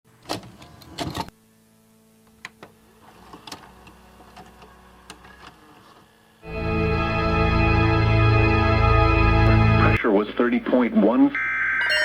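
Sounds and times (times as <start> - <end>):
faint steady hum: 0.1 - 6.5.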